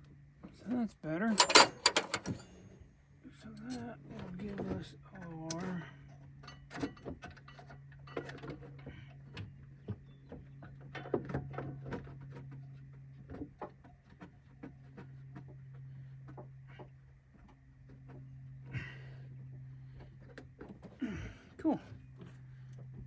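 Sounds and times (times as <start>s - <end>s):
tools and parts clicking: 1.3s - 2.6s.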